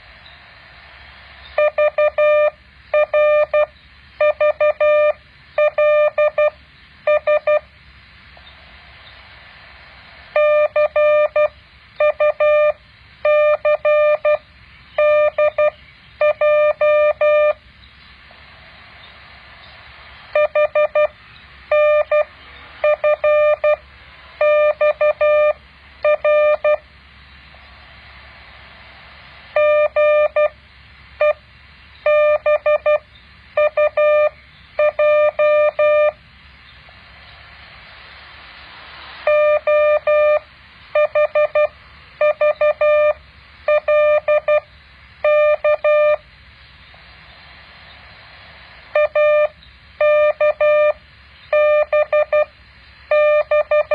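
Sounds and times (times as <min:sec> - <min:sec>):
faint steady hiss: 0:00.0 - 0:53.9
morse code tones: 0:01.5 - 0:07.7, 0:10.3 - 0:14.4, 0:15.0 - 0:17.6, 0:20.3 - 0:23.8, 0:24.4 - 0:26.9, 0:29.5 - 0:30.6, 0:31.2 - 0:31.4, 0:32.0 - 0:36.2, 0:39.2 - 0:46.3, 0:48.9 - 0:52.5, 0:53.1 - 0:53.9.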